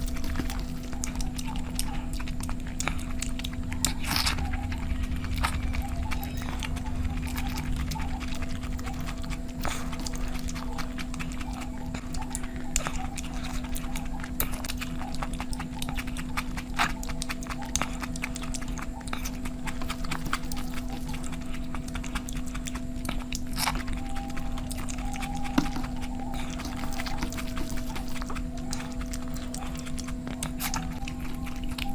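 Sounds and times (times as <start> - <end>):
steady low hum: 0.0 - 31.9
wet chewing and mouth smacking: 0.0 - 31.9.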